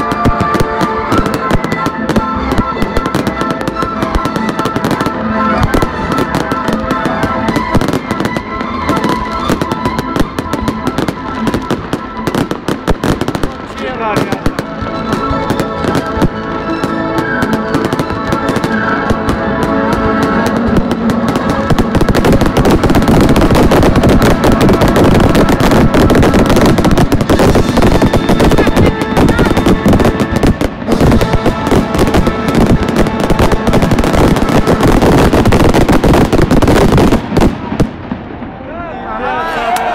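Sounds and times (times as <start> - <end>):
music playing: 0.0 - 37.4
fireworks bangs and crackles: 0.0 - 38.7.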